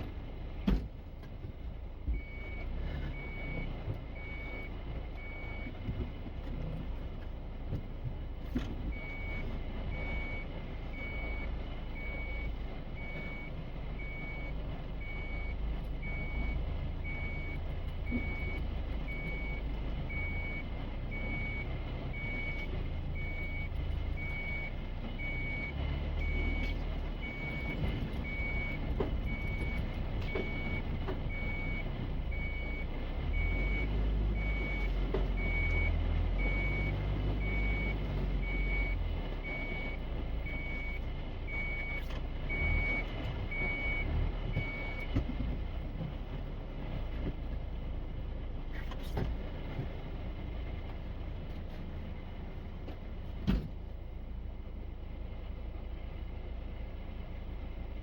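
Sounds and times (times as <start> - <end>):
engine rumble: 0.0 - 58.0
vehicle warning beeper: 2.0 - 6.3, 8.5 - 45.3.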